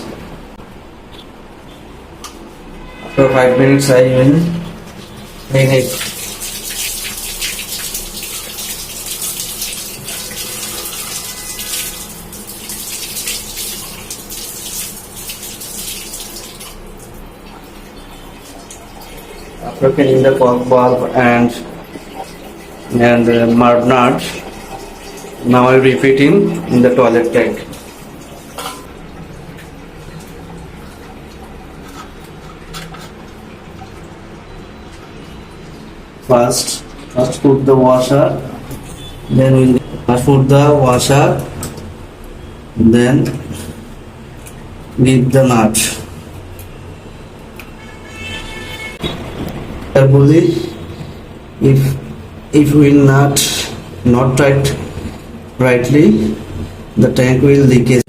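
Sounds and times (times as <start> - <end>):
tap water running and splashing: 4.4 - 42.5.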